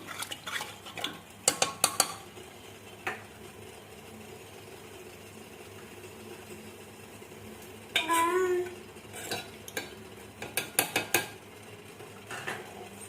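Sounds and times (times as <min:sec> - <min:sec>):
metal ladle scraping pot: 0:00.0 - 0:01.2.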